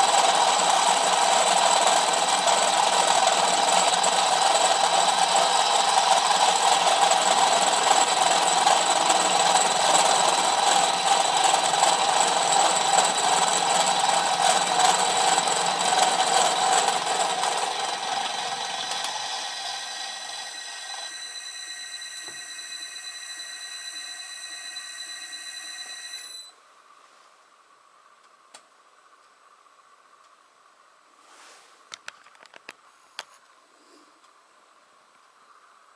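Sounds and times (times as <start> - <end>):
harsh metal machining noise: 0.0 - 26.4
spindle whine: 0.0 - 26.5
small click: 28.5 - 28.7.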